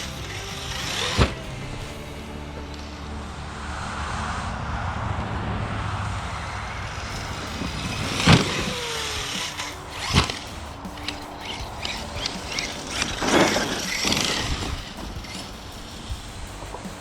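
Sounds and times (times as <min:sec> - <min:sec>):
sharp impacts: 0:06.9 - 0:17.0
toy truck motor hiss: 0:07.2 - 0:16.1.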